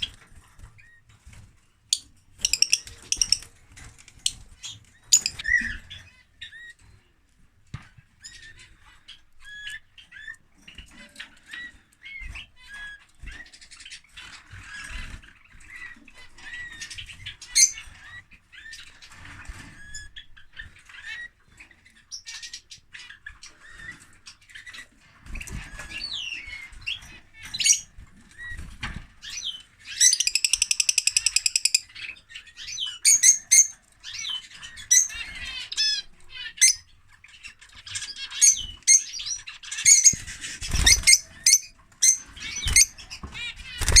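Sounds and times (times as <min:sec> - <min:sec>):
lovebird chirping and squawking: 0:01.9 - 0:03.6, 0:04.2 - 0:06.8, 0:08.2 - 0:18.9, 0:25.4 - 0:28.6, 0:29.2 - 0:44.0
rapid chattering bird trill: 0:02.4 - 0:03.6, 0:29.4 - 0:44.0.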